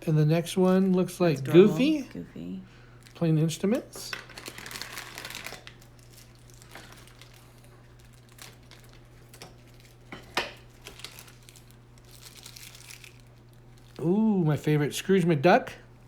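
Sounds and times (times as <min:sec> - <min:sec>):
plastic wrapper crinkling: 0:03.0 - 0:03.3, 0:04.1 - 0:14.1.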